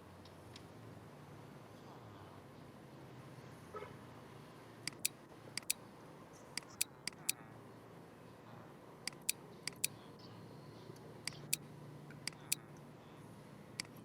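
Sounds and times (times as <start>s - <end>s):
short sharp clicks: 4.9s - 5.8s, 6.6s - 7.4s, 9.1s - 9.9s, 11.3s - 11.6s, 12.3s - 12.6s, 13.8s - 14.0s.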